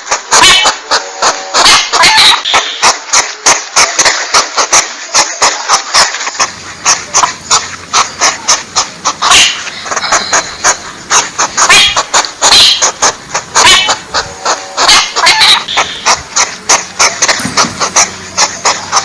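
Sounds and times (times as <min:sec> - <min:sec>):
porcupine squeaks and clicks: 0:09.2 - 0:13.0, 0:13.6 - 0:14.0.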